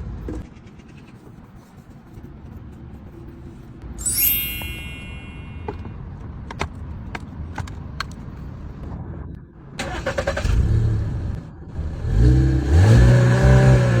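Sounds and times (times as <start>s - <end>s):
car engine revving: 11.9s - 14.0s.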